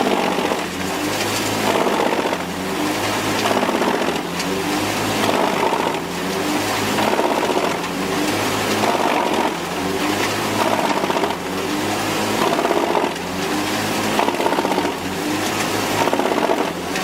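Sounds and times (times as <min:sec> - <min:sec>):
heavy machinery rattling: 0:00.0 - 0:17.0.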